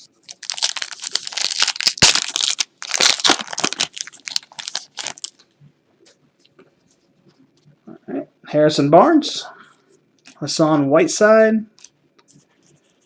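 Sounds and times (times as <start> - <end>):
foil wrapper tearing and crinkling: 0.3 - 5.4.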